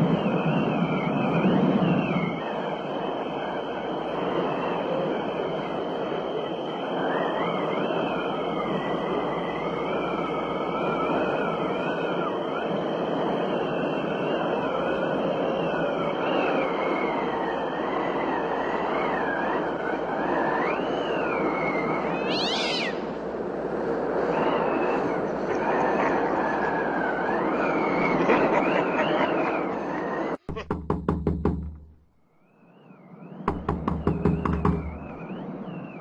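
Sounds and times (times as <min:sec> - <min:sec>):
wailing terrified screams: 0:22.1 - 0:23.1
short sharp shriek: 0:22.3 - 0:23.1.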